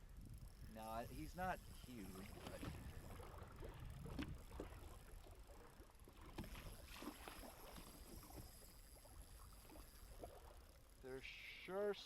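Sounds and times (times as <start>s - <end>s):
low rumble of wind: 0.0s - 11.2s
water lapping against boat hull: 1.7s - 10.9s.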